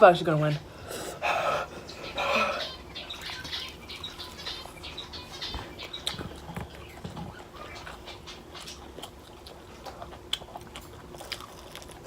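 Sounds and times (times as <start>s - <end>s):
person chewing and smacking lips: 5.8s - 12.0s.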